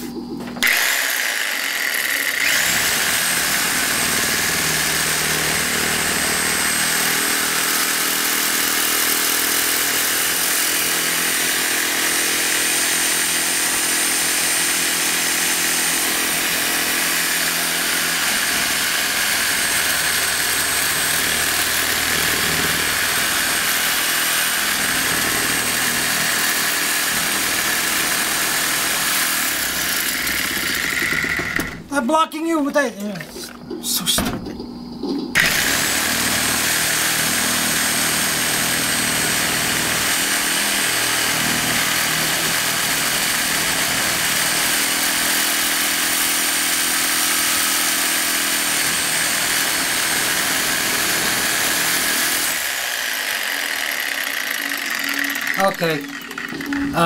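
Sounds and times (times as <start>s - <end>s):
power saw cutting steel: 0.0s - 31.9s, 35.4s - 57.0s.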